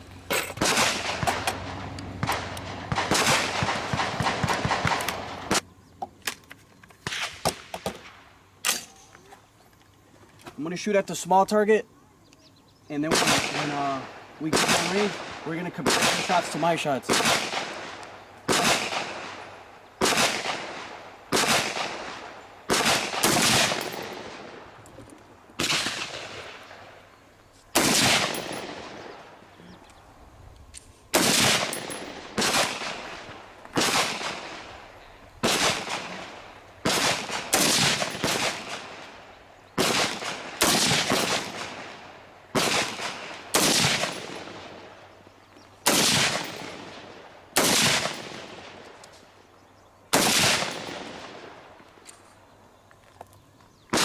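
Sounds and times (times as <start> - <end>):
gunshots with echo: 0.6 - 5.6, 13.0 - 24.6, 27.8 - 29.3, 31.2 - 34.7, 35.4 - 39.2, 39.8 - 44.9, 45.8 - 48.8.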